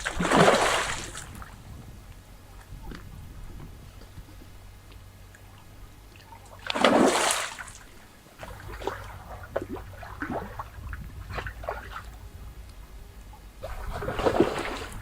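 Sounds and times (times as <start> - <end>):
water splashing: 0.0 - 1.7, 5.4 - 15.0.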